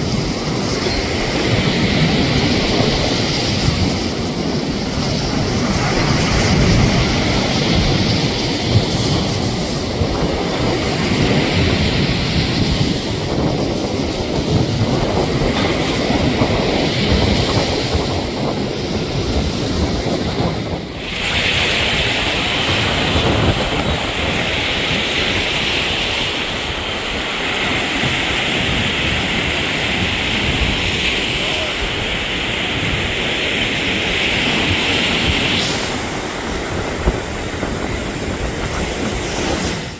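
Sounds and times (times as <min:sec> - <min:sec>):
surf rushing: 0:00.0 - 0:39.9
wind buffeting microphone: 0:00.0 - 0:39.9.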